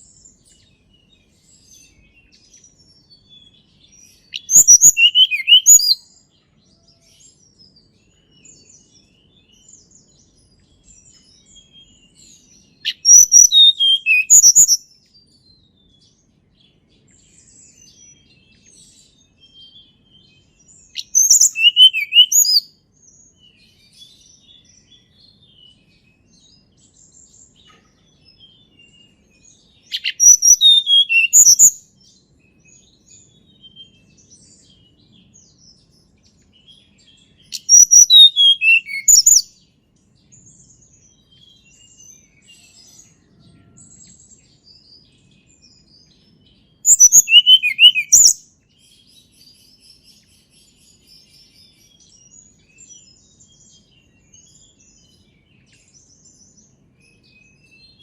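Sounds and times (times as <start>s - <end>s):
faint bird chirps: 0.0s - 58.0s
bird singing high rapid notes: 4.1s - 6.0s, 12.9s - 14.8s, 20.8s - 22.7s, 29.8s - 31.8s, 37.2s - 39.5s, 46.6s - 48.4s.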